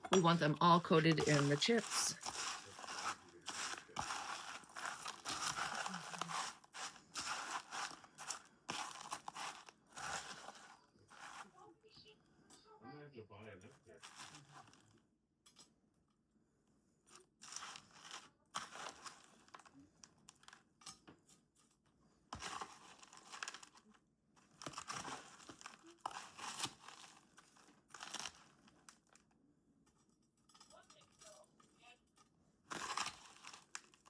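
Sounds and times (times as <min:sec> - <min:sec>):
potato chips crunching: 0:00.0 - 0:11.5, 0:24.6 - 0:29.2, 0:32.7 - 0:34.0.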